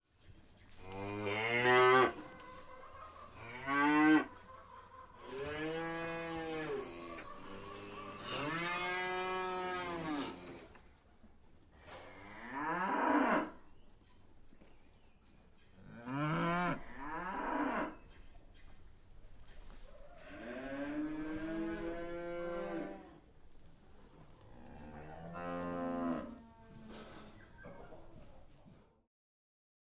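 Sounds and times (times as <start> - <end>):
cows mooing: 0.9 - 2.3, 3.4 - 4.4, 5.3 - 10.5, 11.9 - 13.6, 15.9 - 18.0, 20.3 - 23.2, 24.5 - 26.9.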